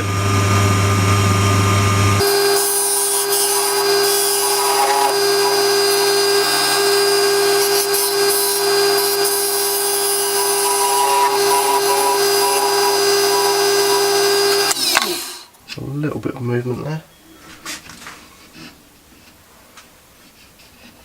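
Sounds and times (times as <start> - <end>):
wood lathe motor hum: 0.0 - 15.5
turning tool hissing on wood: 2.2 - 15.5.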